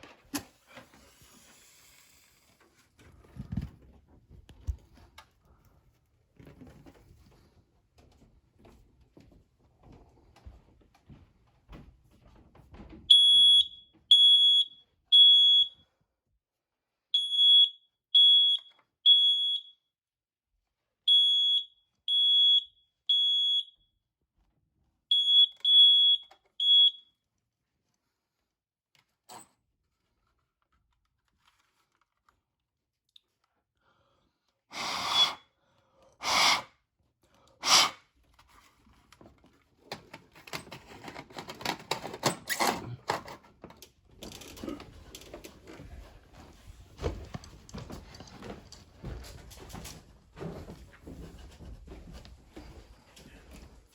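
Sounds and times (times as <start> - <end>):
smoke alarm beeping: 13.1 - 15.8, 17.2 - 19.8, 21.1 - 23.8, 25.1 - 27.1.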